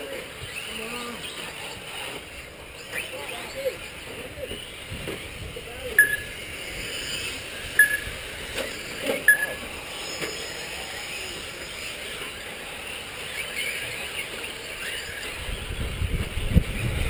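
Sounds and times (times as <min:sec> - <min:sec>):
rc truck engines buzzing: 0:00.0 - 0:17.0
short high beeps: 0:06.0 - 0:06.3, 0:07.8 - 0:08.1, 0:09.3 - 0:09.6.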